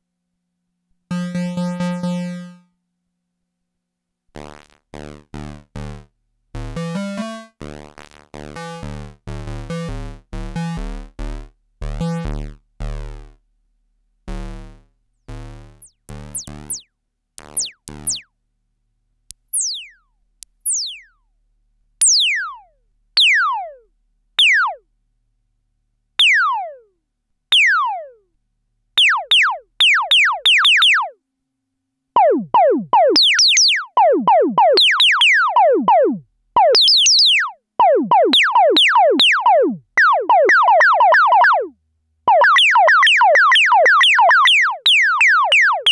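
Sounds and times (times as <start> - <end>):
synthesizer zaps sweeping down: 15.4 - 16.8, 17.4 - 18.2, 19.4 - 19.9, 32.2 - 41.7.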